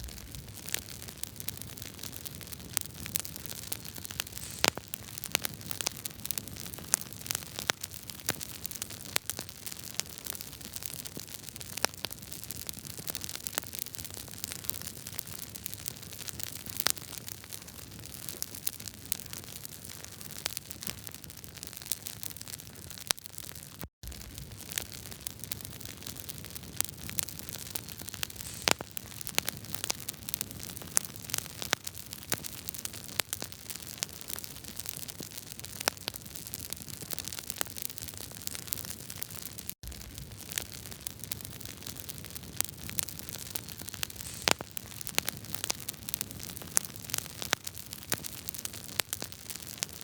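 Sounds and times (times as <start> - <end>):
wood fire crackling: 0.0 - 50.0.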